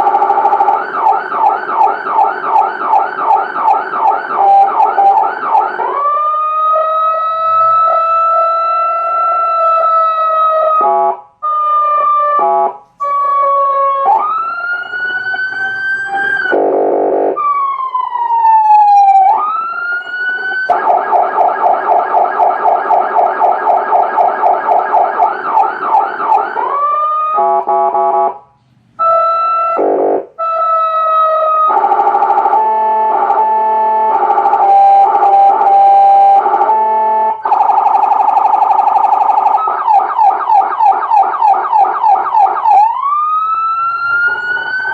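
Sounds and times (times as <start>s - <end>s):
fast yelp siren warble: 0.0s - 28.1s, 29.0s - 44.9s
electronic siren wailing: 0.0s - 28.3s, 29.0s - 44.9s
two-tone siren pattern: 0.0s - 44.9s
pulsed horn blasts: 6.7s - 9.0s, 15.4s - 17.4s, 27.3s - 30.6s
siren short blips: 6.7s - 10.1s, 29.0s - 39.8s.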